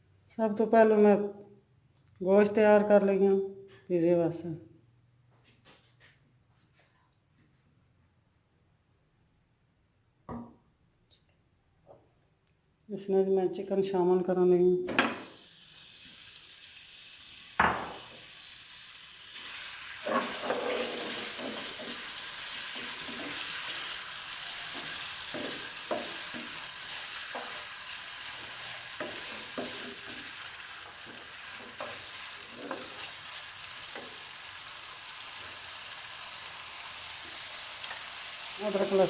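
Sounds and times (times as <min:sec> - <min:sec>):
chicken sizzling in a pan: 0:15.2 - 0:39.0
spoon scraping a pan: 0:20.0 - 0:34.3.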